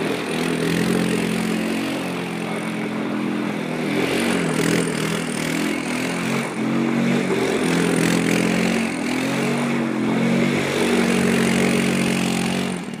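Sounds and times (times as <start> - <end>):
atv engine revving: 0.0 - 13.0.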